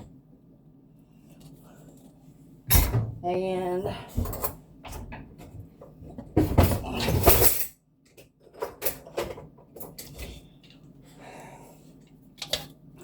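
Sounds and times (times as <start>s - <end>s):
kitchen utensils clattering: 6.1s - 7.8s, 8.5s - 10.4s.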